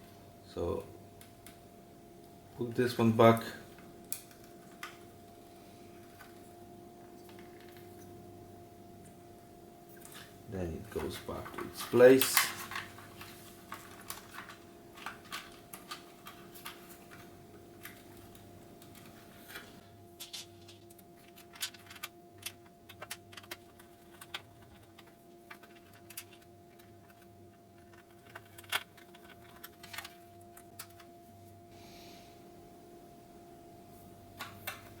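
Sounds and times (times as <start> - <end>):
faint steady hum: 0.0 - 35.0
plastic parts clicking: 11.0 - 17.2, 17.8 - 31.1.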